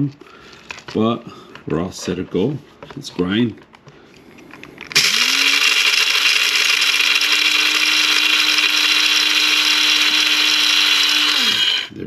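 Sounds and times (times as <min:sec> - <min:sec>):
coffee grinder motor whine: 0:04.9 - 0:12.0.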